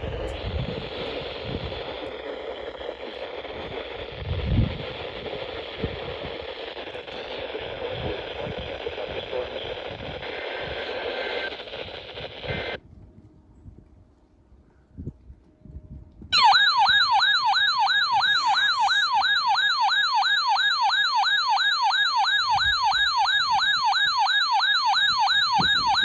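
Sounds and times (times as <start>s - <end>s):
radio static hiss: 0.0s - 12.8s, 18.3s - 19.2s.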